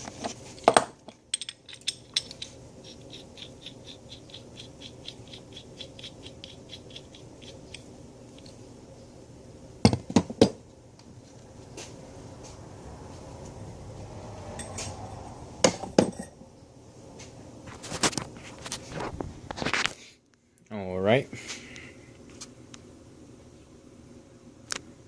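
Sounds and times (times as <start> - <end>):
metal tools clinking: 0.6 - 2.5.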